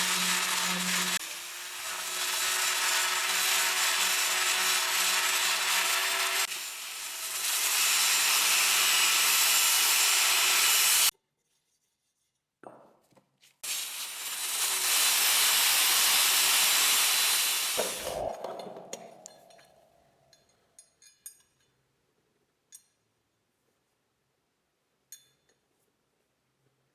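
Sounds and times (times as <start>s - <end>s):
power sander rubbing metal: 0.0s - 11.1s, 13.6s - 18.3s
light metal clinks: 20.4s - 21.8s.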